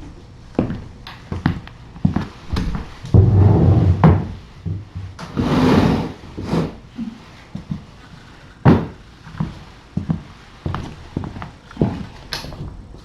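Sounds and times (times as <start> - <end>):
rumbling rustling noise: 1.4 - 13.0
knocks of things handled: 8.7 - 9.0.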